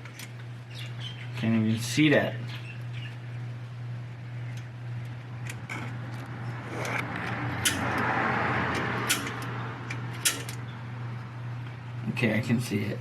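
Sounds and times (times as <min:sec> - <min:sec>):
hammer tapping metal punch: 0:07.6 - 0:08.0.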